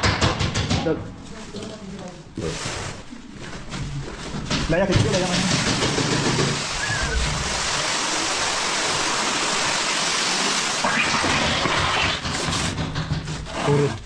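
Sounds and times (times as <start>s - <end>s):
spraying water: 5.5s - 12.2s.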